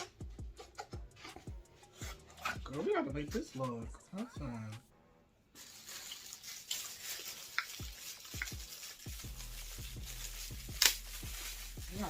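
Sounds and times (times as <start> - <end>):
food containers knocking and rustling: 0.0 - 3.7.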